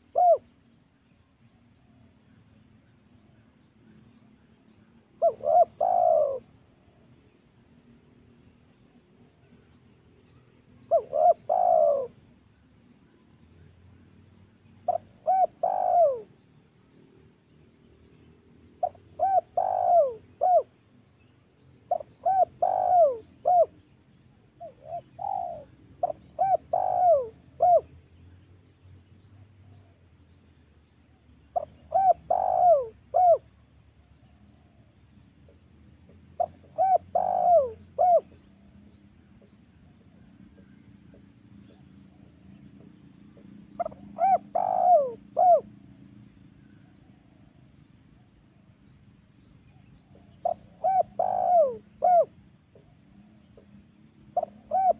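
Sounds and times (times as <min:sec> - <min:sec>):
dove cooing: 0:00.0 - 0:00.5, 0:05.2 - 0:06.6, 0:10.8 - 0:12.3, 0:14.8 - 0:16.4, 0:18.8 - 0:20.8, 0:21.9 - 0:23.8, 0:24.6 - 0:28.0, 0:31.6 - 0:33.5, 0:36.3 - 0:38.5, 0:39.4 - 0:45.9, 0:50.1 - 0:53.7, 0:54.3 - 0:54.9.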